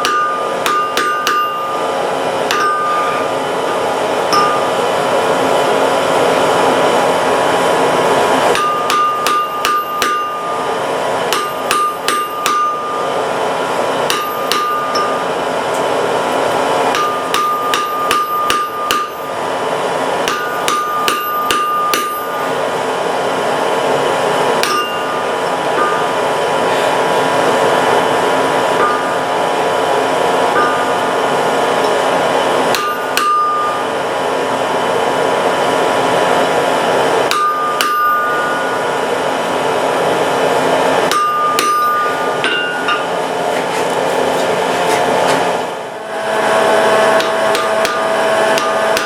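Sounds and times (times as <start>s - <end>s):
hammer striking iron on anvil: 0.0s - 5.2s, 8.5s - 13.2s, 14.0s - 15.9s, 16.8s - 19.4s, 20.2s - 22.6s, 24.6s - 26.7s, 28.7s - 29.7s, 30.4s - 34.0s, 37.2s - 39.4s, 41.0s - 43.3s, 47.2s - 49.0s.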